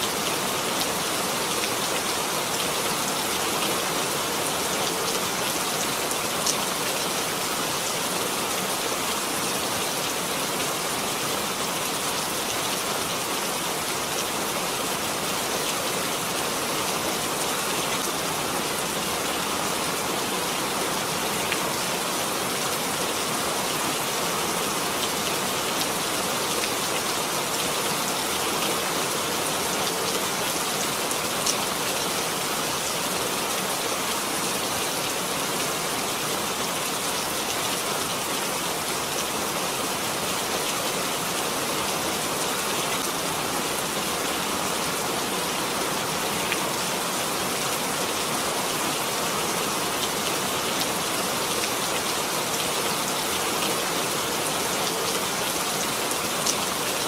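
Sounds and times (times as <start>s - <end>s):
steady rain falling: 0.0s - 57.0s.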